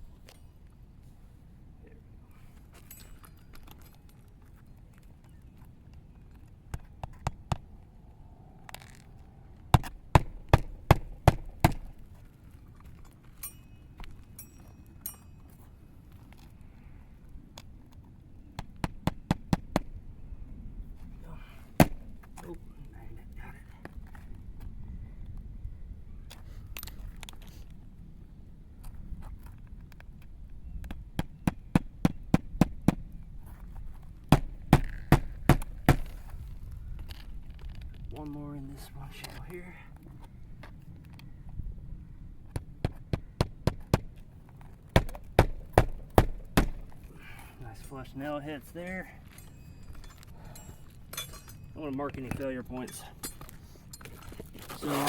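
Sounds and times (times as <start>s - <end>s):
faint metallic clinks: 2.7s - 6.4s, 12.7s - 16.5s, 48.9s - 54.8s
hammer striking nails: 9.8s - 11.9s, 21.8s - 22.0s, 34.3s - 36.2s, 44.9s - 47.0s
light clicks and scrapes: 26.3s - 27.9s, 36.0s - 41.3s, 46.8s - 55.0s.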